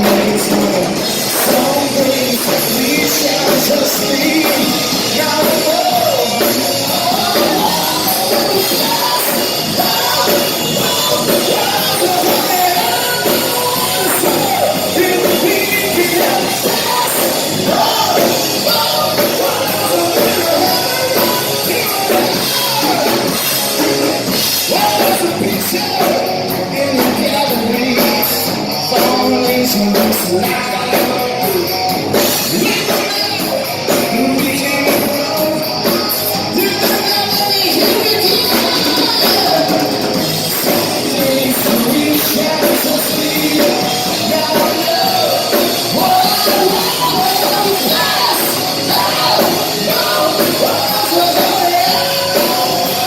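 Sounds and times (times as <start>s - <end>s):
bass guitar: 0.0s - 53.0s
drums: 0.0s - 53.0s
electric guitars: 0.0s - 53.0s
lead singer singing: 0.0s - 53.0s.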